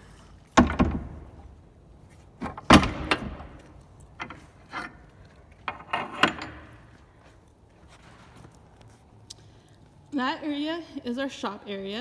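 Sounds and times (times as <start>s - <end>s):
door latch rattling: 0.6s - 1.6s, 2.4s - 6.9s
wooden barn door shutting: 0.6s - 1.7s, 2.4s - 7.0s.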